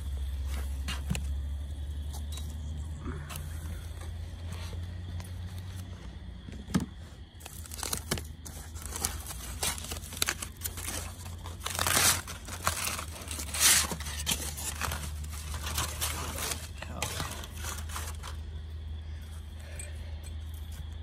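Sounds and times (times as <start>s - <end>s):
aluminium foil crinkling and tearing: 7.4s - 18.4s.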